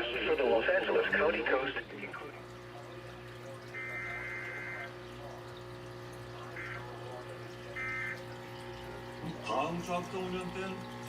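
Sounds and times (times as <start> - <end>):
radio hum: 0.0 - 2.5, 3.8 - 5.0, 6.4 - 8.3
high buzzing data tones: 3.7 - 5.0, 7.7 - 8.3.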